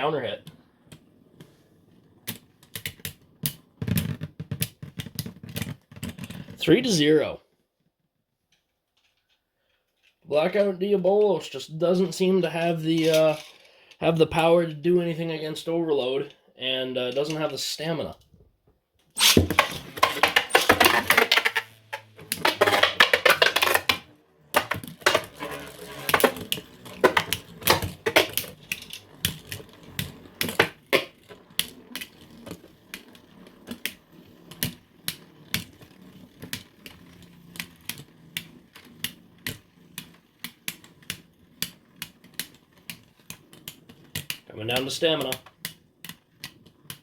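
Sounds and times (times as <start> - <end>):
spinning top launch rasp: 12.5 - 13.7, 19.1 - 47.0
spinning tops clashing: 19.2 - 33.2.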